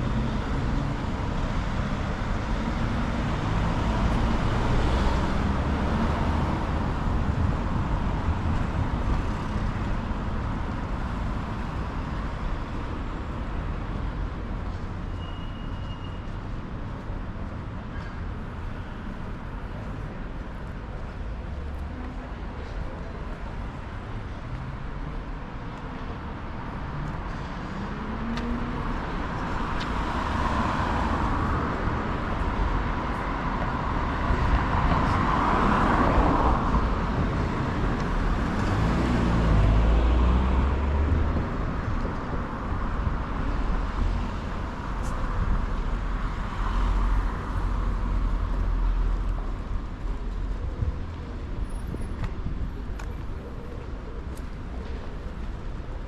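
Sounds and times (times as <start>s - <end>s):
cars driving past: 23.6s - 56.0s.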